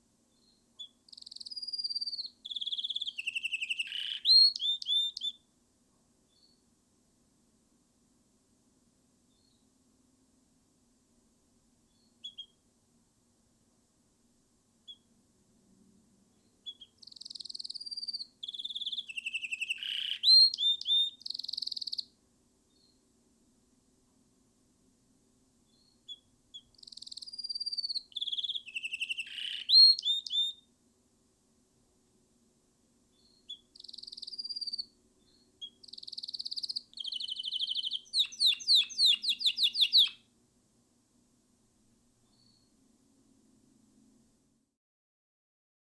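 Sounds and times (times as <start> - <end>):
canary singing trills: 0.4 - 5.4, 11.9 - 12.6, 16.6 - 22.1, 25.7 - 30.6, 33.2 - 40.2.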